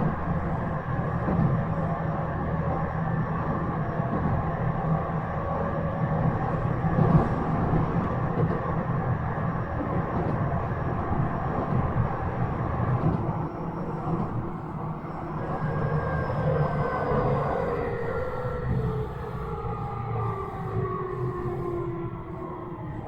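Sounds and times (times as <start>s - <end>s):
train rumbling on track: 0.0s - 23.0s.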